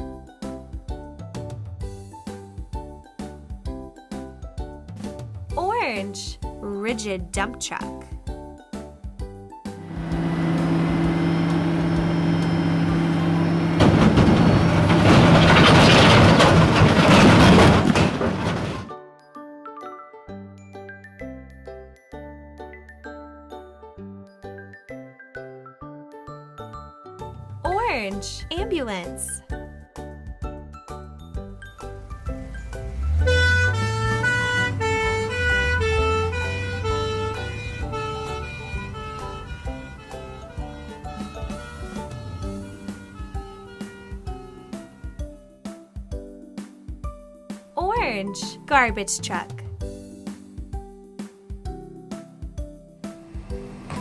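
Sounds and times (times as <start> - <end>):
diesel truck engine running: 9.8 - 18.9, 31.7 - 44.4, 53.2 - 54.0
two-tone ambulance siren: 33.1 - 39.7.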